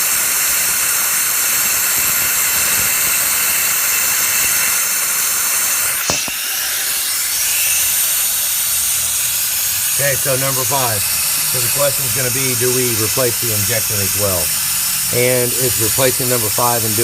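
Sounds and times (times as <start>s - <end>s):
compressed air hissing: 0.0s - 17.0s
sharp click: 6.0s - 6.4s.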